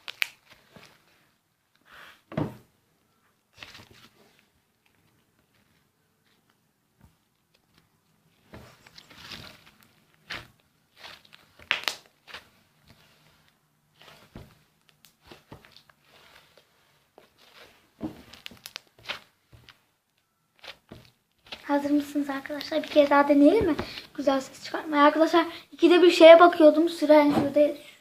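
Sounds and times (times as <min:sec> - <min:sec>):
slime squishing and popping: 0:00.0 - 0:00.5, 0:09.2 - 0:12.4, 0:18.2 - 0:19.3.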